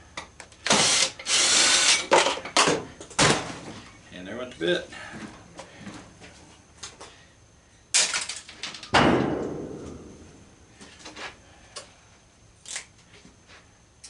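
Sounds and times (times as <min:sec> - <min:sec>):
loud ringing bang: 0:09.0 - 0:10.3.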